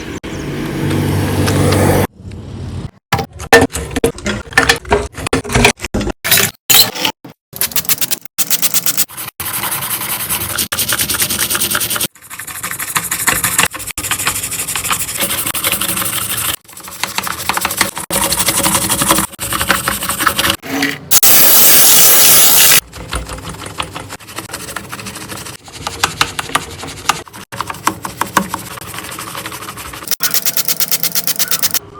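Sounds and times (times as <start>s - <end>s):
rapid scraping and scrubbing: 8.2s - 21.2s, 22.8s - 31.9s.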